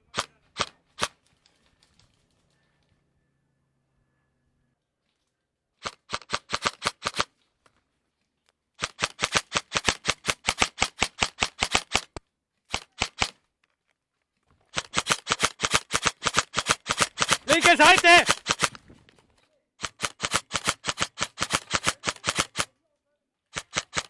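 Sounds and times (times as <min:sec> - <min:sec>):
airsoft gun firing: 0:05.8 - 0:07.3, 0:08.8 - 0:12.1, 0:12.7 - 0:13.4, 0:14.8 - 0:18.8, 0:19.8 - 0:22.7, 0:23.5 - 0:24.0.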